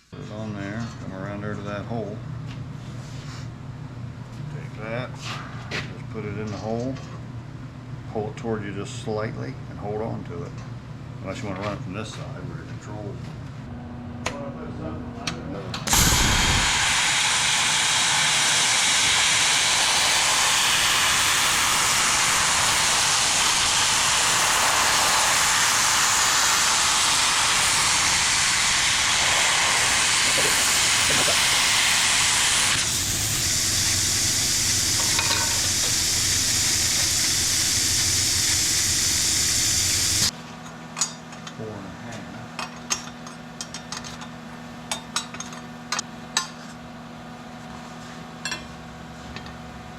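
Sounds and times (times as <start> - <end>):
welding arc sizzling: 15.9 - 40.3.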